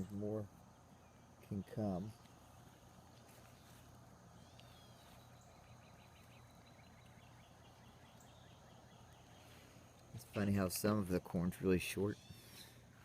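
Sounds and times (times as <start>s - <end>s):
distant bird singing: 0.0s - 13.0s.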